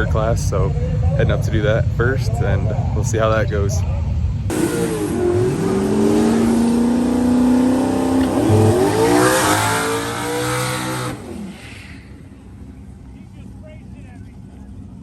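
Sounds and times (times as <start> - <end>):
race car engine revving: 4.5 - 12.8.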